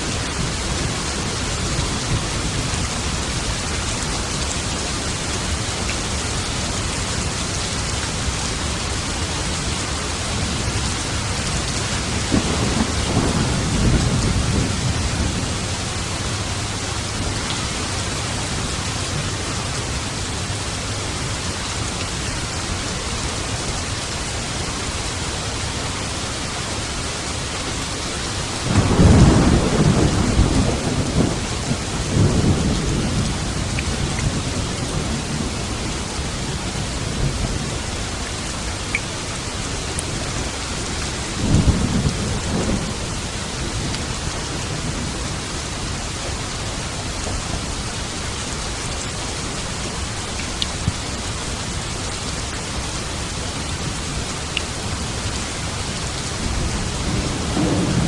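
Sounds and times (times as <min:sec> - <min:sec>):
steady rain: 0:00.0 - 0:58.0
thunder rumbling: 0:10.3 - 0:19.4, 0:28.6 - 0:38.4, 0:41.4 - 0:46.1, 0:53.2 - 0:58.0.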